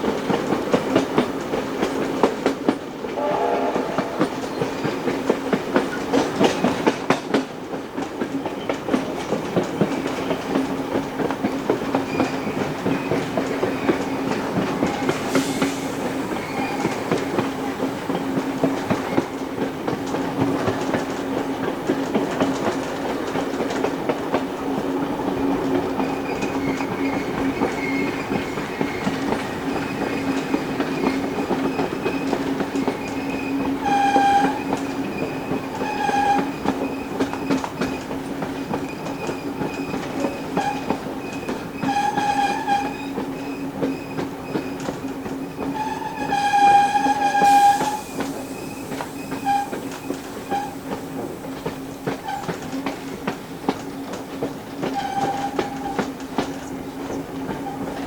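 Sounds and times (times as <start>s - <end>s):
train carriages rattling: 0.0s - 58.0s
steam whistle blasts: 3.1s - 5.1s, 14.8s - 17.5s, 45.8s - 50.8s.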